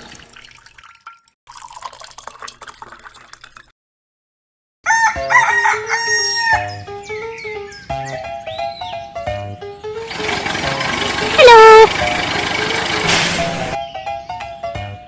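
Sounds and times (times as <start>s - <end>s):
water trickling: 0.0s - 3.7s
rooster crowing: 4.8s - 6.8s.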